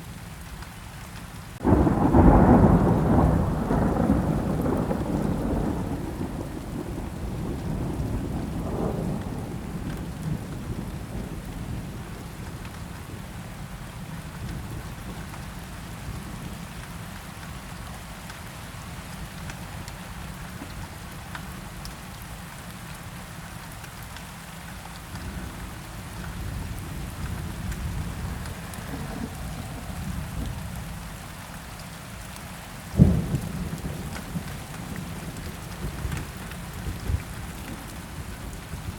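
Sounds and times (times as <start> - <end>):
steady rain: 0.0 - 38.9
sharp thunderclap: 1.6 - 10.9, 26.5 - 30.8
low rolling thunder: 1.6 - 13.4, 25.2 - 31.4, 32.9 - 38.9.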